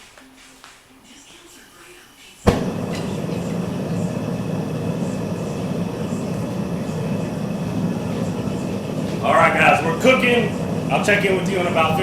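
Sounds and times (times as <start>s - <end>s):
furnace burner rushing: 2.4s - 12.0s.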